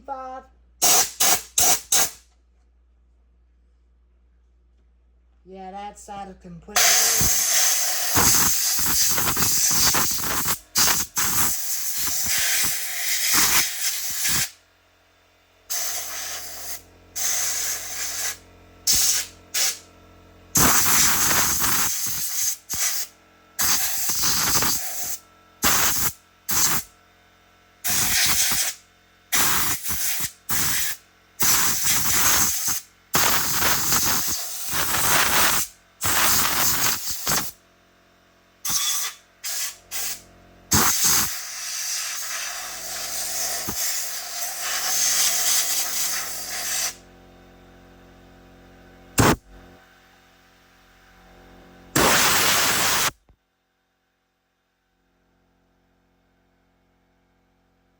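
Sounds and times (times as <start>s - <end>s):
pressurised spray hissing: 6.8s - 14.5s.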